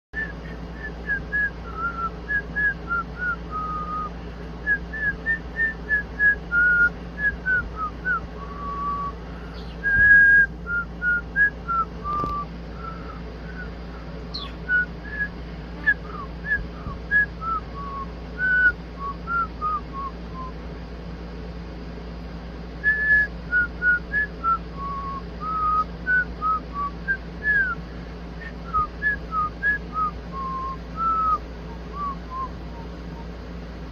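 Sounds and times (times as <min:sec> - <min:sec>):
person whistling a tune: 0:00.2 - 0:04.1, 0:04.7 - 0:13.7, 0:22.8 - 0:27.8, 0:28.4 - 0:32.6
steady low hum: 0:00.2 - 0:33.9.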